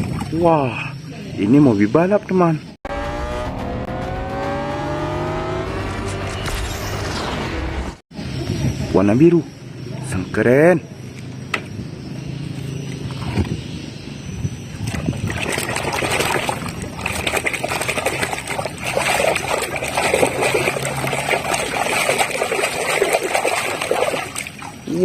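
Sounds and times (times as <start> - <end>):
water splashing and trickling: 0.0 - 1.0, 14.6 - 25.0.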